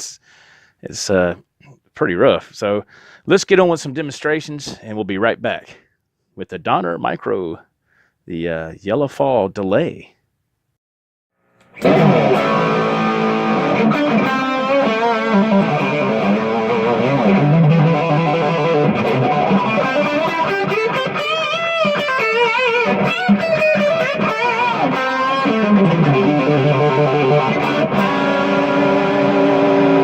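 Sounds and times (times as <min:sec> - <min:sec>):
electric guitar sustained notes: 0:11.8 - 0:30.0.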